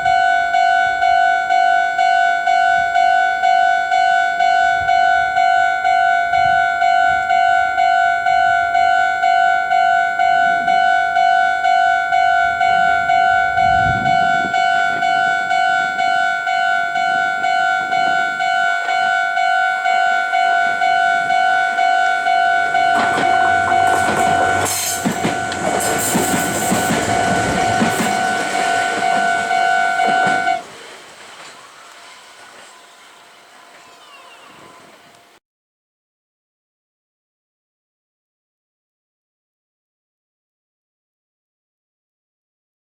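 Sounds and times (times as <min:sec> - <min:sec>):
level crossing warning bell: 0:00.0 - 0:30.7
electric train passing: 0:00.0 - 0:35.4.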